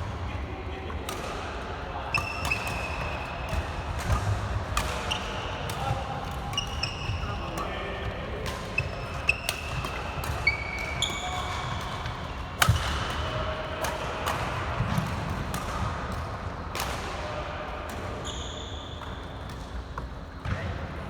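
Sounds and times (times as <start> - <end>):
racket striking shuttlecock: 8.4 - 17.2
sneakers squeaking on court floor: 8.8 - 12.0, 18.2 - 20.6.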